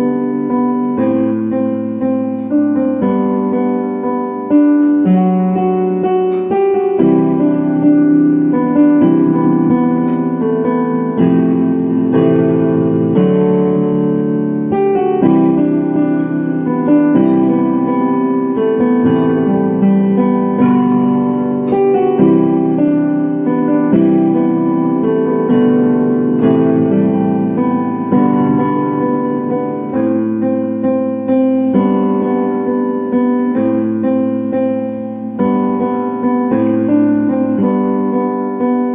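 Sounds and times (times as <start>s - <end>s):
piano waltz: 0.0s - 38.9s.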